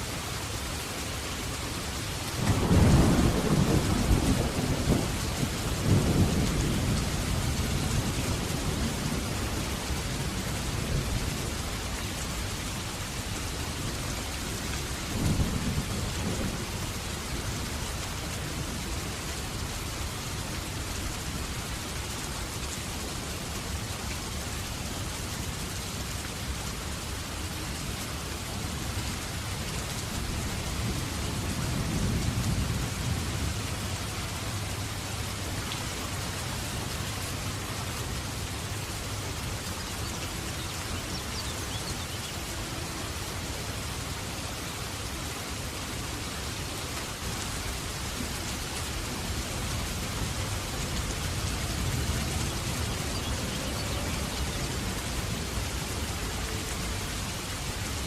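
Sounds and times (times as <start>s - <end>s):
heavy rain pouring: 0.0s - 58.0s
thunder rumbling: 2.4s - 10.0s.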